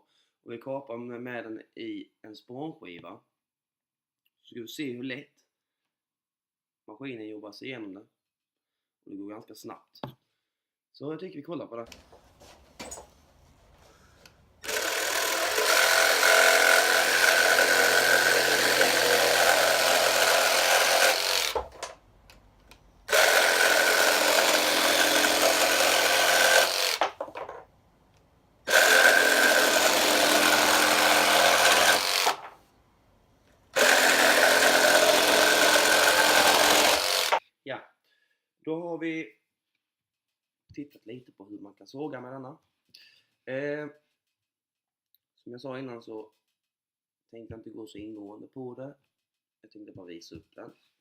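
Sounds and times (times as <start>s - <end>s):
jigsaw cutting chipboard: 14.6s - 21.9s, 23.1s - 27.6s, 28.7s - 32.6s, 33.8s - 37.4s.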